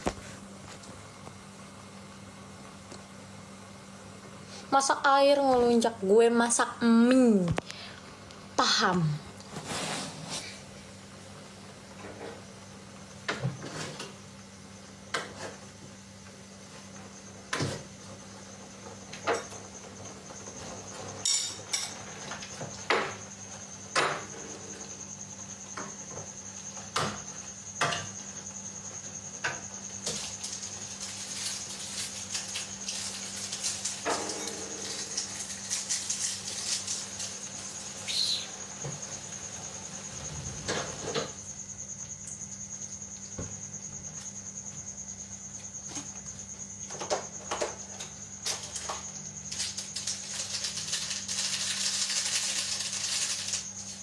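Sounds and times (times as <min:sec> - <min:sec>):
insect trill: 0:03.2 - 0:54.0
pots and utensils clinking: 0:21.2 - 0:23.0, 0:31.0 - 0:37.3.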